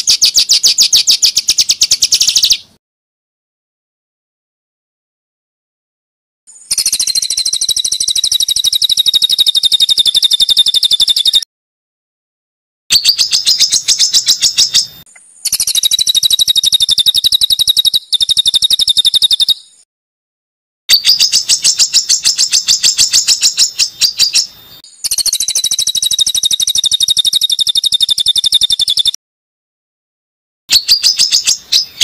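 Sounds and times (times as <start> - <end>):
songbird singing harsh notes: 0.0 - 2.8, 6.5 - 11.5, 12.9 - 19.8, 20.9 - 29.2, 30.7 - 32.0.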